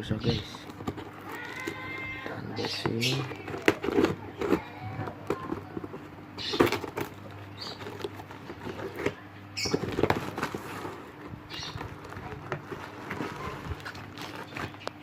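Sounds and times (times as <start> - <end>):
cardboard box being opened: 0.2 - 15.0.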